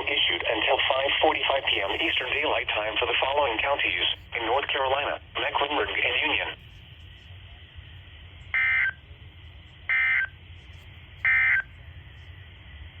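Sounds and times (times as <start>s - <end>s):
faint radio hiss and hum: 0.0s - 13.0s.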